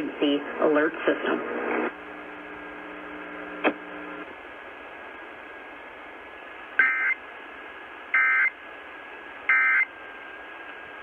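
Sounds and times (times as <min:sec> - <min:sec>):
radio hiss: 0:00.0 - 0:05.8.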